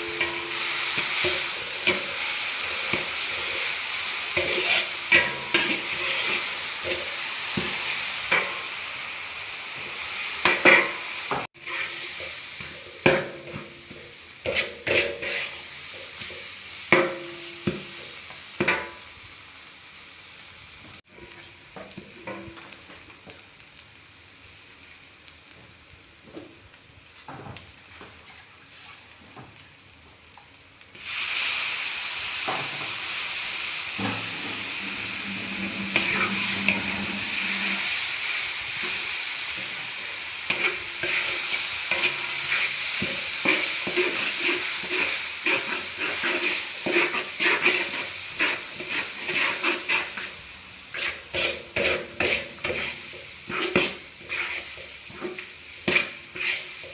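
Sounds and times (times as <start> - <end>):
spatula stirring and scraping: 0.0 - 8.4, 10.4 - 17.0, 34.0 - 39.9, 40.5 - 56.9
food sizzling in a wok: 0.0 - 56.9.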